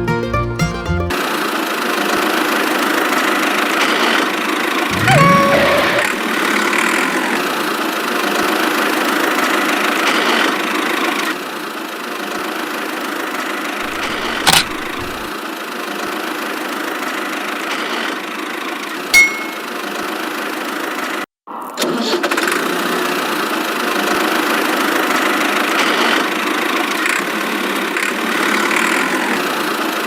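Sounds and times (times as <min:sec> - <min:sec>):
sharp click: 0:13.8 - 0:15.3.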